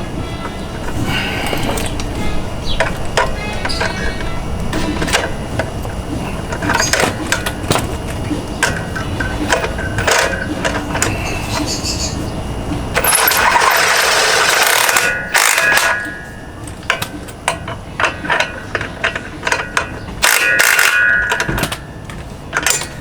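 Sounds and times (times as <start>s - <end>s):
ratchet wrench ratcheting: 8.6s - 11.7s, 12.9s - 16.2s, 16.9s - 21.9s
sharp ratchet clicks: 12.9s - 21.9s.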